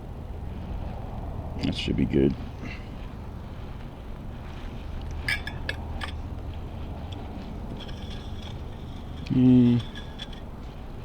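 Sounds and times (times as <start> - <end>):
steady low hum: 0.0 - 11.0
small metal parts clinking: 5.2 - 6.2, 7.7 - 10.5.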